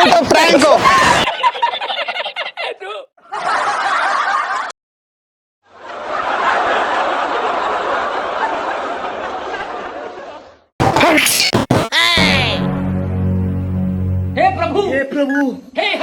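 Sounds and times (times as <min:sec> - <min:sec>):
laughter: 0:01.2 - 0:04.8, 0:05.8 - 0:10.7, 0:15.8 - 0:16.0.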